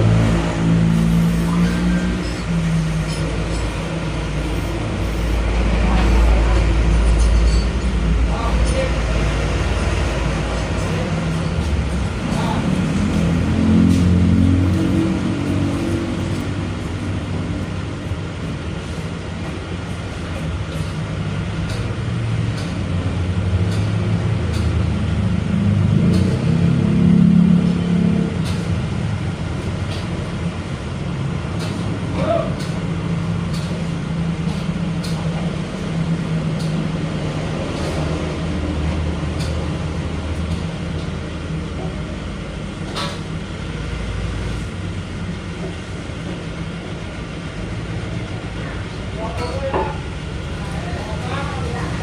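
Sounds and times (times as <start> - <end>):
heavy diesel engine running: 0.0 - 52.0.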